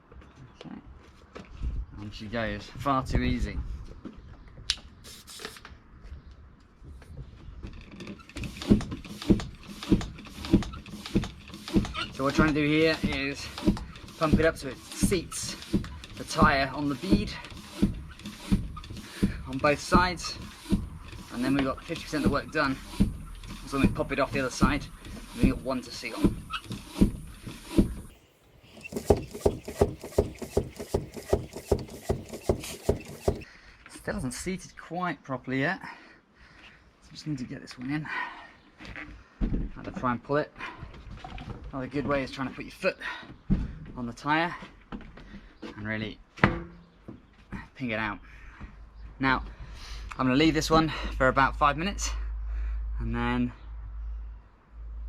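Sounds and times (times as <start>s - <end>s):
bicycle pump strokes: 5.1s - 5.6s, 8.1s - 33.5s.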